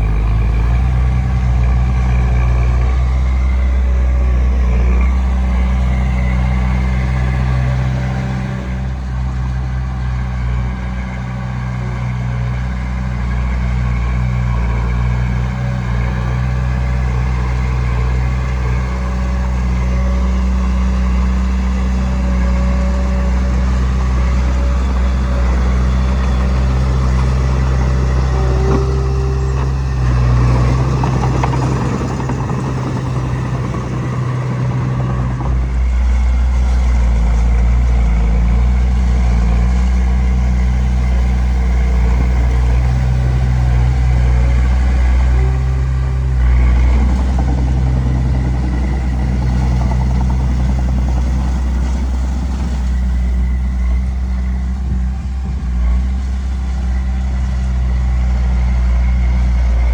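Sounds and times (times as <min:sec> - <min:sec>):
heavy diesel engine running: 0:00.0 - 0:59.9
noisy rattling: 0:28.1 - 0:37.9, 0:41.3 - 0:54.2.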